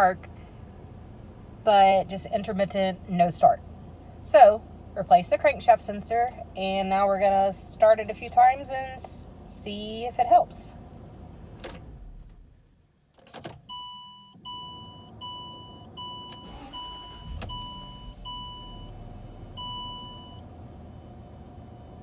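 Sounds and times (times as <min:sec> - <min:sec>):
low engine rumble: 0:00.0 - 0:13.0, 0:14.4 - 0:22.0
dashboard warning chime: 0:13.7 - 0:20.5.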